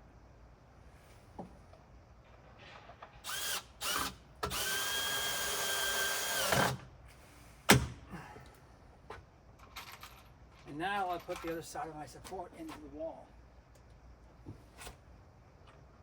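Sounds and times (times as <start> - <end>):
power drill driving screw into wood: 3.2 - 6.9.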